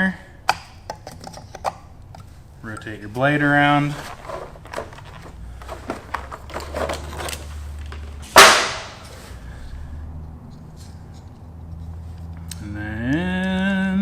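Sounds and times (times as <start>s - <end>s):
plastic parts clicking and rattling: 0.5s - 9.2s
loud knock: 8.3s - 9.0s.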